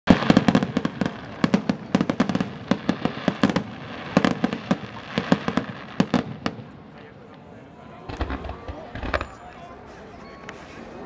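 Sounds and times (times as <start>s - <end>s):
fireworks bangs and crackling: 0.1s - 9.9s.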